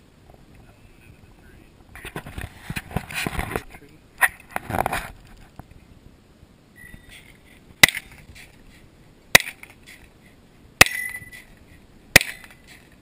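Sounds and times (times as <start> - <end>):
rifle shots: 12.2 - 12.5.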